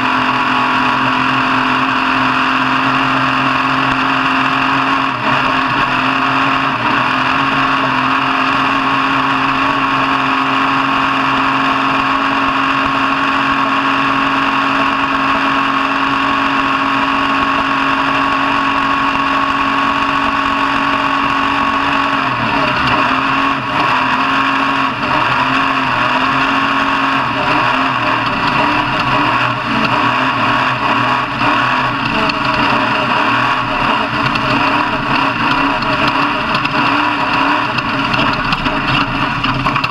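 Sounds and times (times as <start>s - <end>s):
engine running at high revs: 0.0s - 39.9s.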